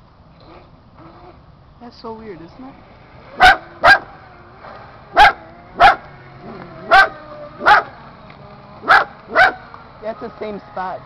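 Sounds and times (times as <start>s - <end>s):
dog barking: 3.4s - 4.1s, 5.2s - 6.0s, 6.9s - 7.9s, 8.8s - 9.6s.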